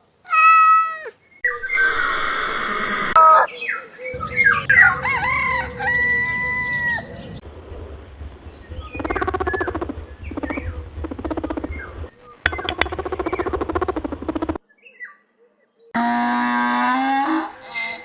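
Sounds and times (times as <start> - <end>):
rattling pulsed animal calls: 1.5 - 3.2, 4.1 - 14.6
long steady pitched animal call: 1.5 - 3.5, 4.1 - 14.6.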